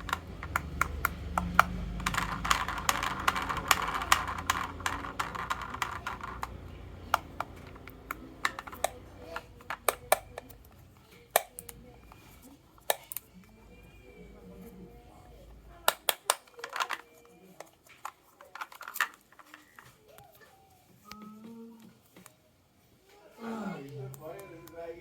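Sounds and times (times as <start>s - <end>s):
toy vehicles rattling down wooden slope: 0.0s - 10.6s, 15.9s - 20.1s.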